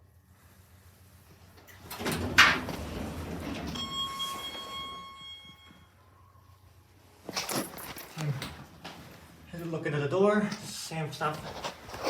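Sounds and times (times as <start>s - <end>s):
elevator doors sliding: 1.7s - 5.8s
elevator door clunk: 1.8s - 5.5s
steady electronic beep: 3.8s - 6.4s.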